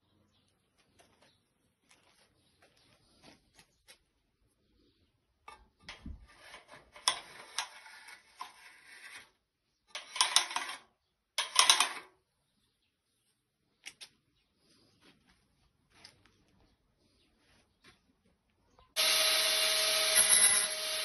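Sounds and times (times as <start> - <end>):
workshop clicks and clattering: 10.0 - 12.1.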